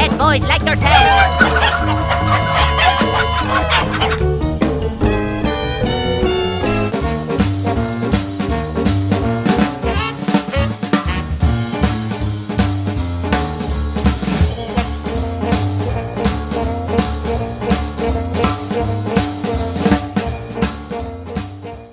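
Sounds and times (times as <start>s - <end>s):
upbeat jazzy instrumental music: 6.5s - 11.8s.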